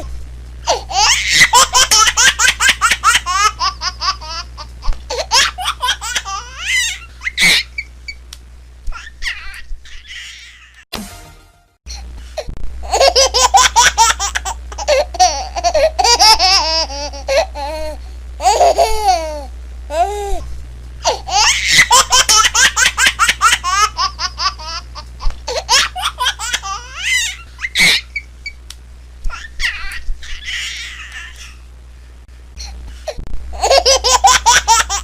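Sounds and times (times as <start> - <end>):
steady low hum: 0.0 - 35.0
baby laughing: 0.7 - 7.9, 8.9 - 10.8, 12.8 - 20.1, 21.0 - 28.3, 29.3 - 31.6, 33.6 - 35.0.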